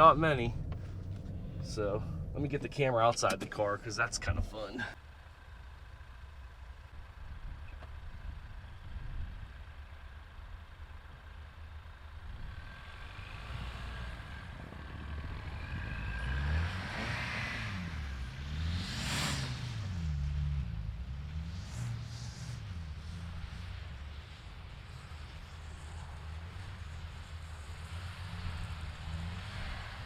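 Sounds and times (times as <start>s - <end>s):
car engine revving: 0.0s - 5.0s, 12.1s - 30.0s.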